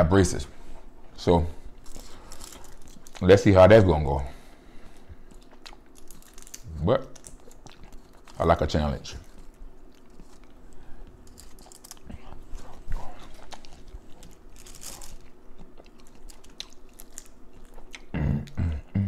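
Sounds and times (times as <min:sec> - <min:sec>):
crab shell cracking: 0:13.4 - 0:18.1.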